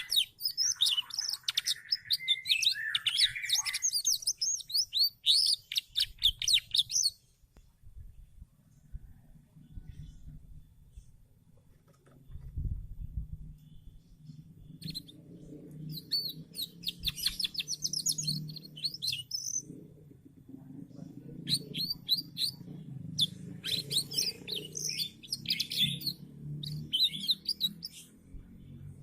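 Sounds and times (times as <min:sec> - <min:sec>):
canary chirping and trilling: 0:00.0 - 0:07.3, 0:13.6 - 0:20.0, 0:20.9 - 0:28.8
low steady background hum: 0:00.0 - 0:26.9.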